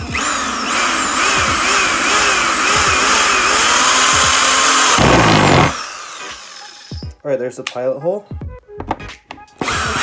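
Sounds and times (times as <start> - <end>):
power drill boring into wood: 0.0 - 7.1, 9.6 - 10.0.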